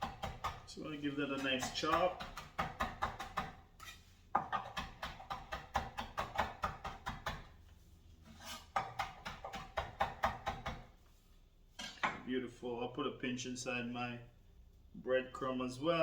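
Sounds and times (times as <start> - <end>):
knife chopping on cutting board: 0.0 - 0.7, 1.6 - 7.5, 8.4 - 10.9.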